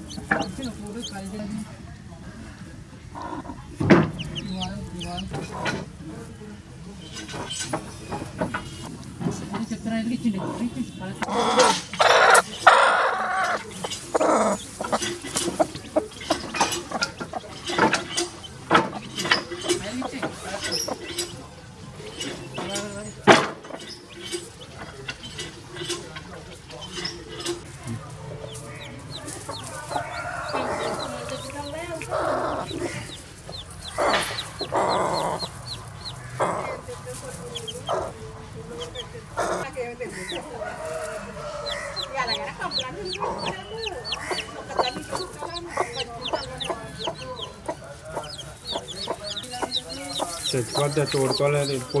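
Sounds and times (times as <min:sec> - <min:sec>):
chicks peeping: 0:00.0 - 0:06.4, 0:10.3 - 0:52.0
hen squawking and clucking: 0:11.2 - 0:19.2, 0:28.5 - 0:52.0.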